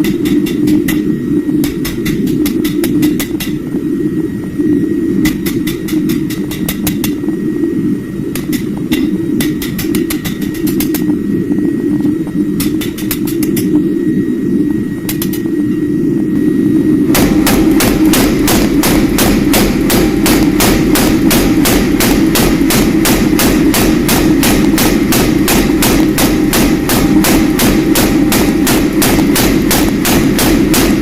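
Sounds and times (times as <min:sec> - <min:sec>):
steady low roar: 0:15.8 - 0:31.0
hammer blows on steel: 0:17.1 - 0:31.0.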